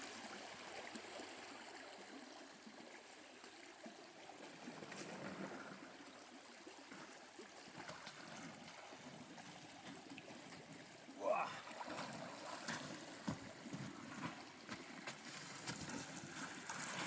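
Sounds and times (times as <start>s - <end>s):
running water in shallow creek: 0.0s - 17.0s.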